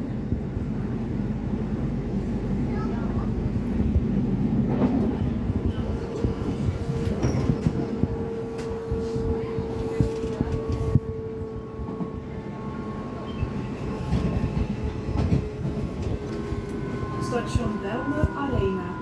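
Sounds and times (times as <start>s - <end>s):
wheels rumbling on rail: 0.0s - 19.0s
train clicks: 6.0s - 12.2s
train motor whine: 6.4s - 19.0s.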